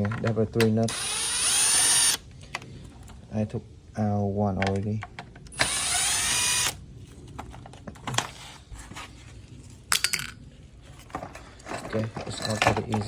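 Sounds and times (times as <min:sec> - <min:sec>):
power tool whirring: 0:00.9 - 0:02.2, 0:05.5 - 0:06.8.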